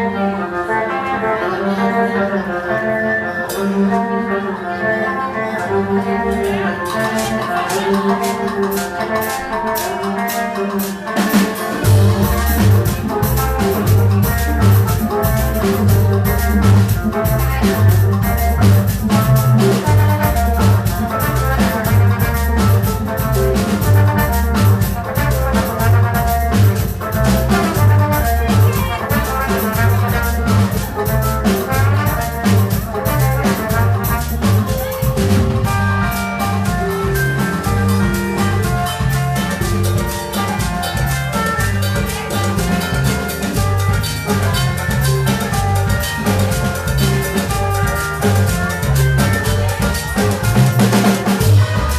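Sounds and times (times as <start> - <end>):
live band playing groove: 0.0 - 51.9
repeating bass line: 11.7 - 51.9.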